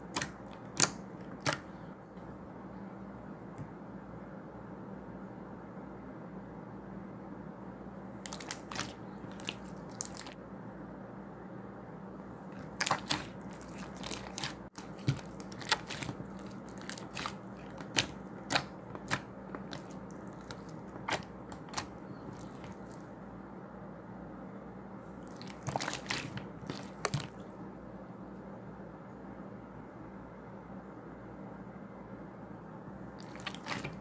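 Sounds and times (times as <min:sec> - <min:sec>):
steady low hum: 0:00.0 - 0:34.0
sharp crunching crackles: 0:12.6 - 0:23.0, 0:25.3 - 0:27.4.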